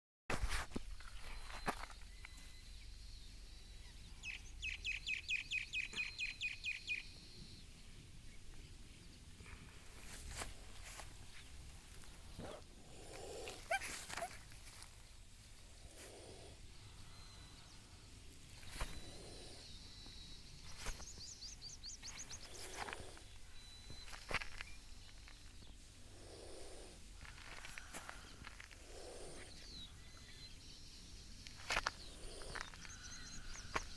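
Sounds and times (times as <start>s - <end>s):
faint high whine: 0.4s - 4.6s, 9.4s - 33.9s
bird calling: 11.4s - 14.9s, 18.6s - 30.6s, 31.5s - 33.9s
short breathy burst: 12.2s - 14.9s, 15.6s - 17.2s, 26.1s - 27.0s, 27.7s - 29.8s.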